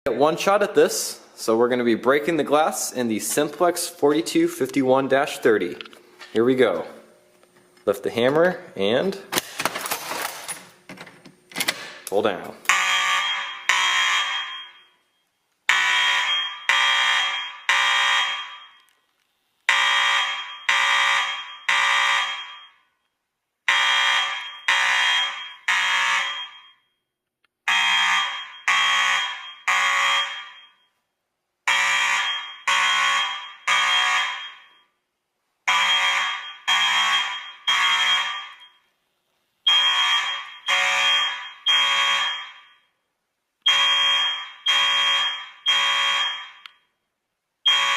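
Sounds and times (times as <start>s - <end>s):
fire alarm pulsing: 12.7s - 18.9s, 19.7s - 23.0s, 23.7s - 27.0s, 27.6s - 31.0s, 31.6s - 35.0s, 35.6s - 38.9s, 39.6s - 43.0s, 43.6s - 47.0s, 47.6s - 47.9s.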